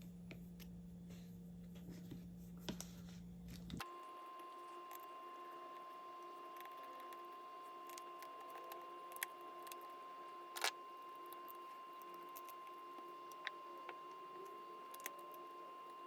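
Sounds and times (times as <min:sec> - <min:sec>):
faint hum: 0:00.0 - 0:16.0.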